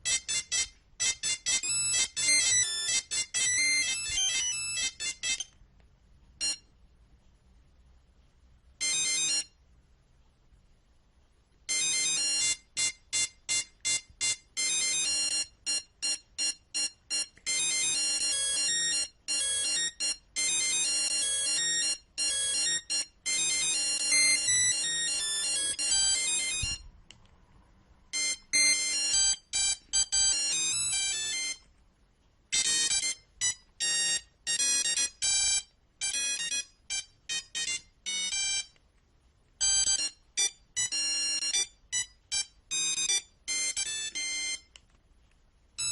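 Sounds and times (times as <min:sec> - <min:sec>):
monophonic ringtone melody: 0:00.0 - 0:05.6, 0:06.4 - 0:06.6, 0:08.8 - 0:09.5, 0:11.7 - 0:26.9, 0:28.1 - 0:31.7, 0:32.5 - 0:38.8, 0:39.6 - 0:44.7.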